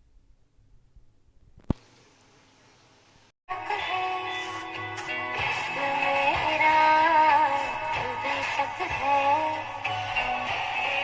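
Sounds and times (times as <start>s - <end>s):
song with singing voice from car stereo: 3.5s - 11.0s.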